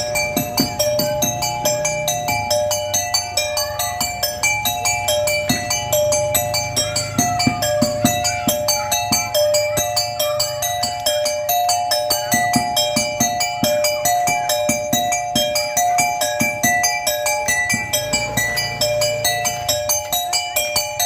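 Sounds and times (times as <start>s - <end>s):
melody of struck notes: 0.0s - 21.0s
steady drum beats: 0.0s - 21.0s.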